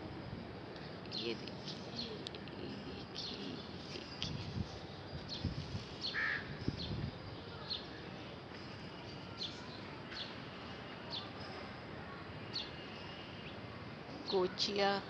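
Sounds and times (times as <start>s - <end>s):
steady background hiss: 0.0s - 15.0s
birds chirping: 1.1s - 11.7s.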